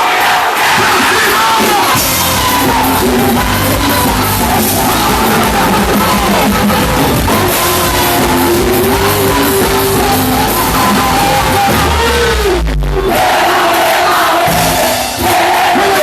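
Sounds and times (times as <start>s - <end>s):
folk dance music with singer: 0.8s - 12.5s.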